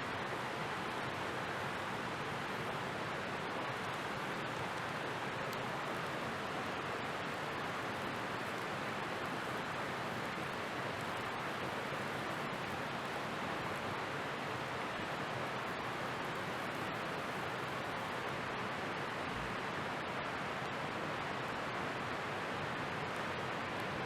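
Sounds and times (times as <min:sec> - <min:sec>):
faint fire crackles: 0:00.1 - 0:24.0
steak sizzling over campfire: 0:03.7 - 0:18.2.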